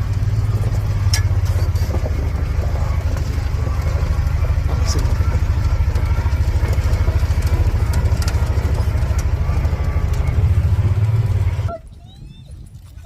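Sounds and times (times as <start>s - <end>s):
vehicle engine running: 0.0s - 13.0s.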